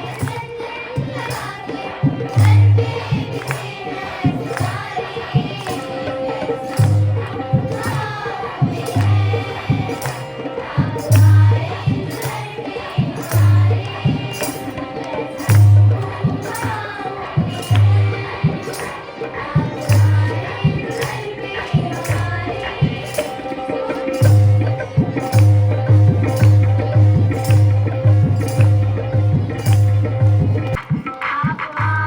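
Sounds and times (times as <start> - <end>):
tambourine and hand drum: 0.0 - 32.0
voices singing: 0.0 - 32.0
deep drum beat: 24.2 - 30.9.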